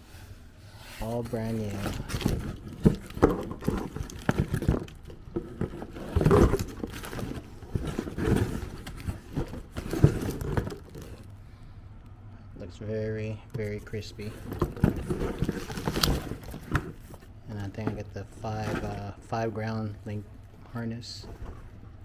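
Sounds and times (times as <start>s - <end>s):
packaging rustling: 1.0s - 11.3s, 13.6s - 19.3s
wiring harness clicks and knocks: 1.6s - 11.3s.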